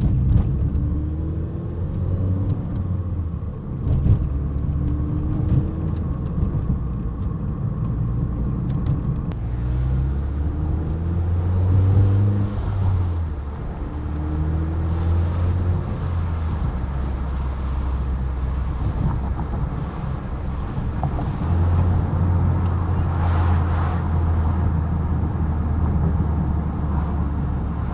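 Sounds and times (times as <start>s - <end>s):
car exhaust drone: 0.0s - 27.9s.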